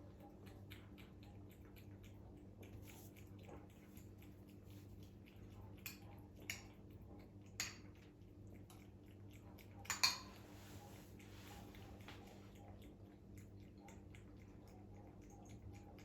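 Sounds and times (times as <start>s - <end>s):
dishes and utensils clinking: 9.8s - 10.5s.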